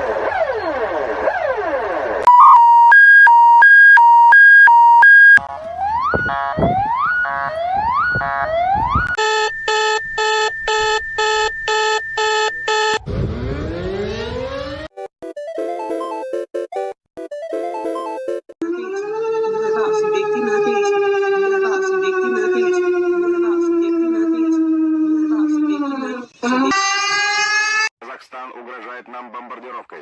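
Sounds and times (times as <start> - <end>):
alternating two-tone beep: 2.3 - 5.4, 9.2 - 13.0
falling alarm sweeps: 2.3 - 14.9, 18.6 - 22.8.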